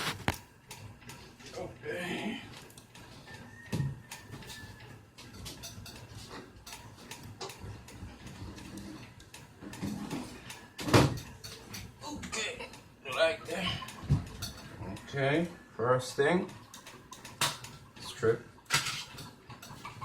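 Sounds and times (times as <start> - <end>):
tools clicking and knocking: 2.6 - 12.0, 12.7 - 15.2, 16.4 - 20.0.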